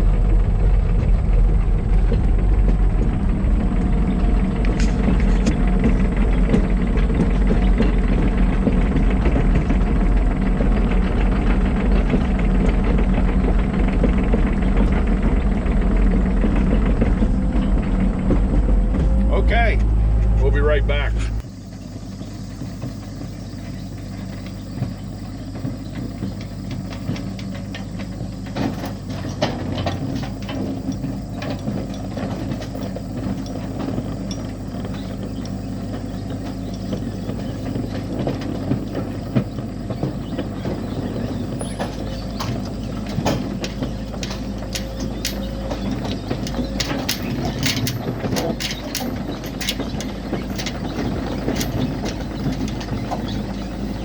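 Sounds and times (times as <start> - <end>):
truck engine running: 0.0 - 54.0
metallic rattles and clicks: 25.5 - 54.0.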